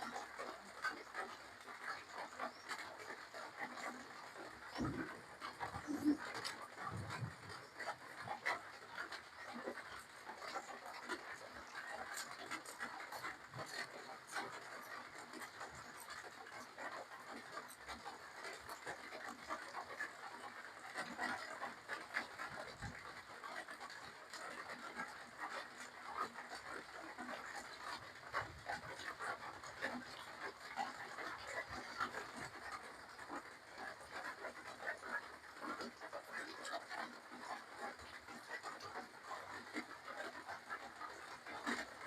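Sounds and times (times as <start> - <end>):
mouth chewing food: 0.1 - 10.0.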